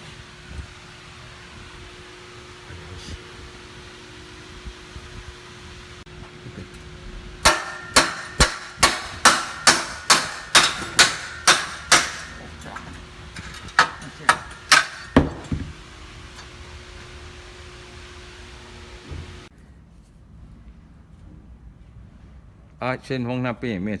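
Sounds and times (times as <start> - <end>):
hammer striking metal: 7.4 - 15.6.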